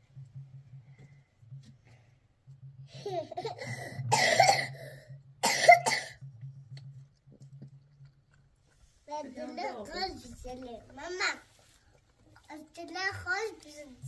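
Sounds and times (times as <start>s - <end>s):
person coughing: 3.4s - 6.2s.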